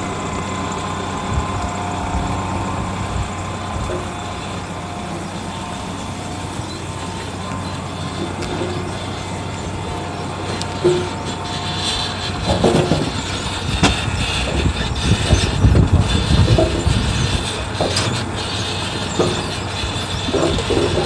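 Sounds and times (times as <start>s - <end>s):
farm machinery humming: 0.0s - 21.0s
clattering and knocks: 10.5s - 21.0s.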